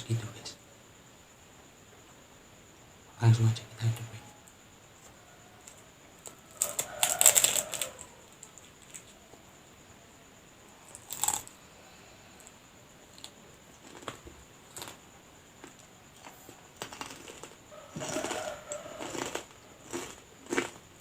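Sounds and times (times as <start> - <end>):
crunchy bites and chewing: 5.0 - 9.2, 10.8 - 11.6, 12.4 - 21.0.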